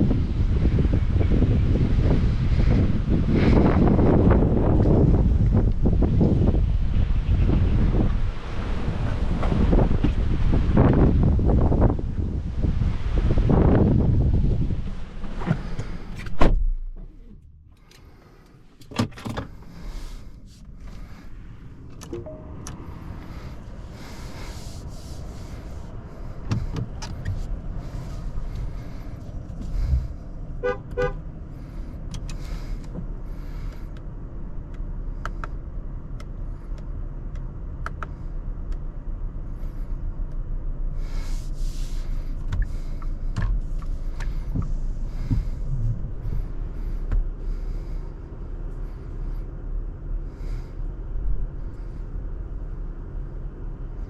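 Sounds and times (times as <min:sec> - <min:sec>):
road and tyre rumble: 0:00.0 - 0:54.0
electronic chime beeps: 0:22.1 - 0:22.6.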